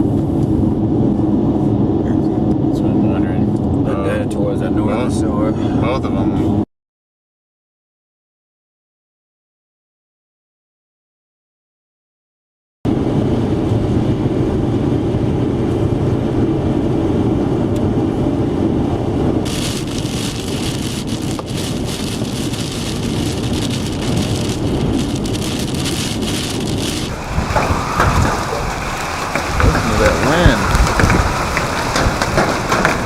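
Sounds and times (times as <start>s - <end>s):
strong wind rumble: 0.0s - 6.6s, 12.9s - 33.0s
rain hissing: 19.4s - 33.0s.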